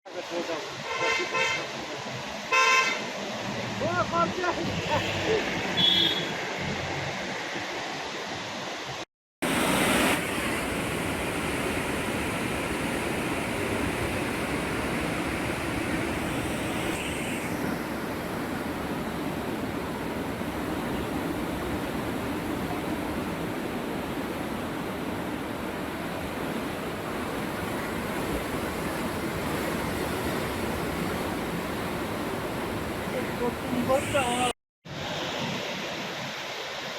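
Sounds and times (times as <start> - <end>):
rushing floodwater: 0.1 - 36.9.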